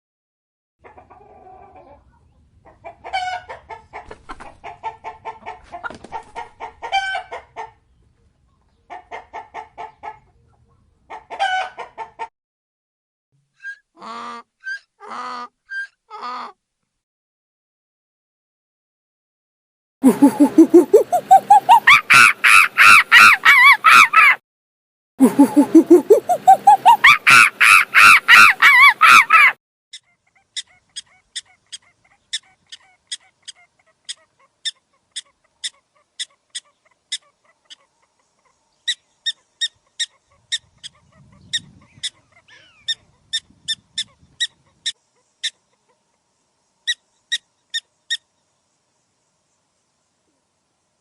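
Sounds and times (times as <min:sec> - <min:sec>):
animal pulsed calls: 0:20.0 - 0:24.3, 0:25.2 - 0:29.5.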